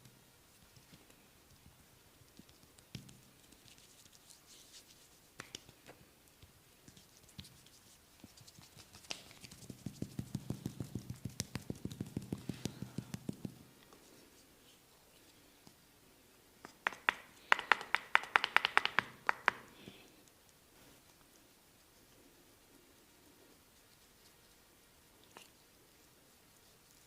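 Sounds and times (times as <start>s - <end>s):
soft rubbing: 0.4s - 15.8s, 20.3s - 27.0s
fast tapping strikes on body: 8.4s - 13.7s, 16.6s - 19.7s.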